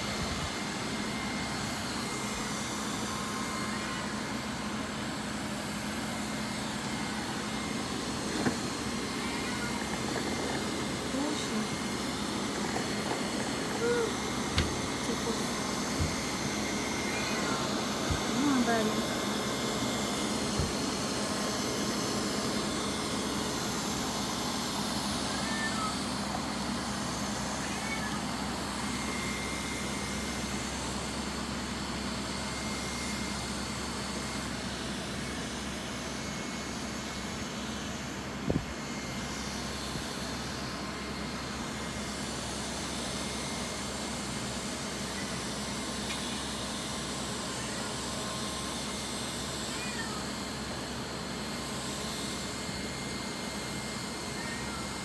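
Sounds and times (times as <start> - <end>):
robot vacuum whirring: 0.0 - 30.7.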